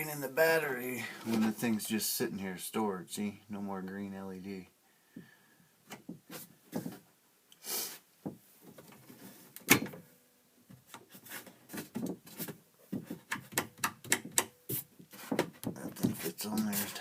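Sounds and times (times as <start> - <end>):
small clicks and knocks: 11.7 - 16.7.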